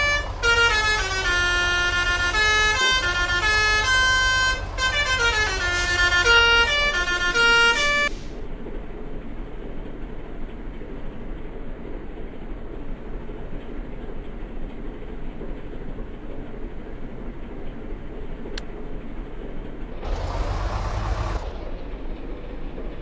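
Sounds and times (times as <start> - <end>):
road traffic rumble: 0.0 - 8.7, 19.9 - 23.0.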